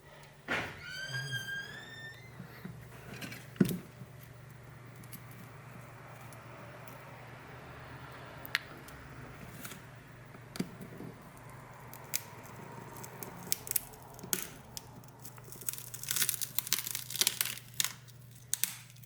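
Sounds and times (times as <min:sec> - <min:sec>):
glass crackling: 0:12.0 - 0:19.0.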